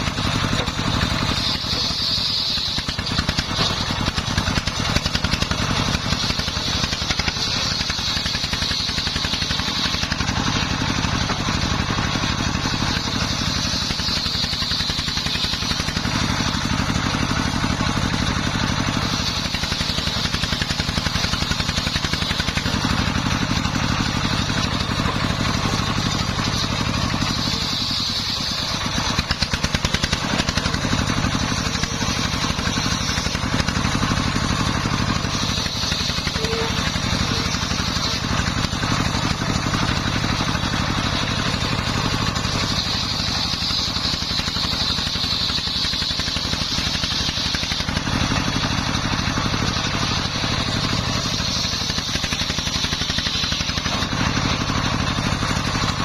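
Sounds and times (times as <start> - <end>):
circular saw blade whine: 0.0 - 56.0
diesel engine running: 0.0 - 56.0.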